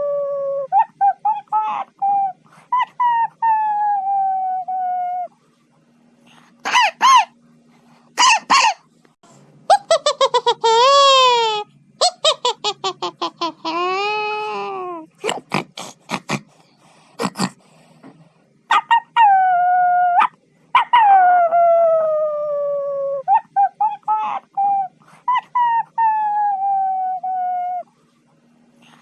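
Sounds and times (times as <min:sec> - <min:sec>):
dog yelping: 0:06.6 - 0:07.3, 0:08.2 - 0:08.8, 0:18.7 - 0:27.8
dog howling: 0:18.7 - 0:27.8.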